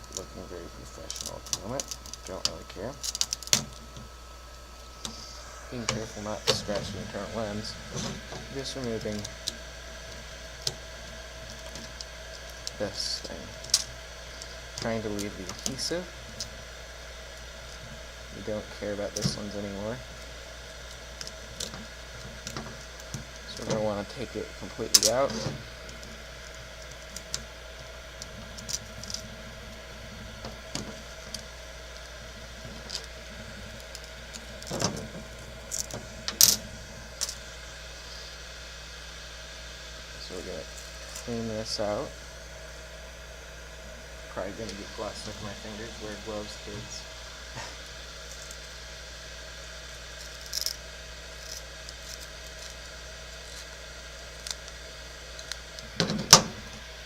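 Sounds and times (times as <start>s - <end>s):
low hum: 0.0s - 57.0s.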